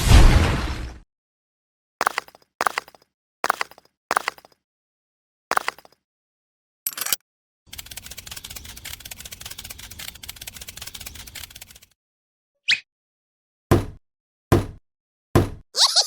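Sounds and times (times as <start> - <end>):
small motor clicking and humming: 2.0 - 4.5, 6.9 - 11.9.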